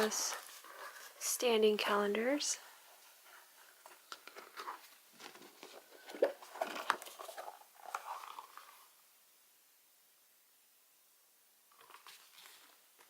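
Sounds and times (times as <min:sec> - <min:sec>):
paper rustling and crinkling: 0:00.0 - 0:01.2, 0:02.9 - 0:08.8, 0:11.7 - 0:13.0.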